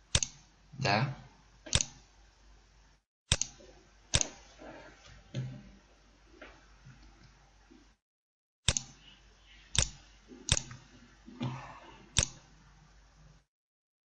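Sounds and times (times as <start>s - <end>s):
computer mouse clicks: 0.1s - 0.5s, 1.7s - 2.0s, 3.3s - 4.4s, 8.7s - 9.0s, 9.7s - 10.9s, 12.1s - 12.5s.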